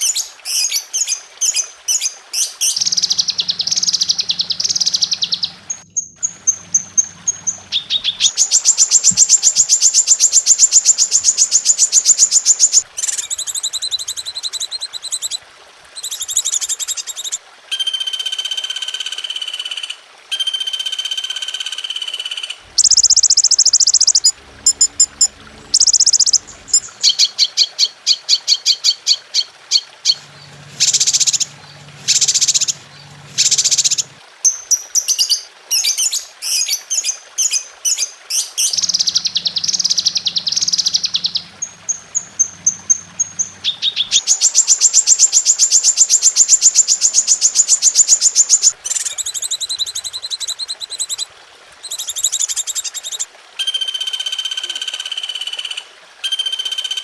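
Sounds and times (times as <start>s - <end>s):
songbirds chirping and trilling: 0.0s - 14.5s, 22.5s - 48.8s.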